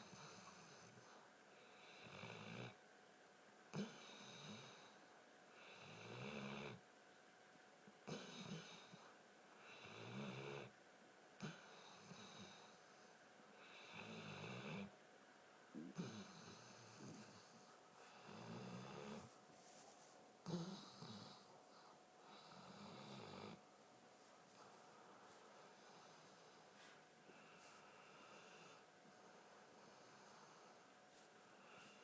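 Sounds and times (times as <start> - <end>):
dog snoring: 0.0 - 2.8, 3.7 - 5.0, 5.6 - 6.8, 8.0 - 10.8, 11.4 - 12.8, 13.6 - 14.9, 15.8 - 19.4, 20.4 - 23.6, 25.8 - 28.8.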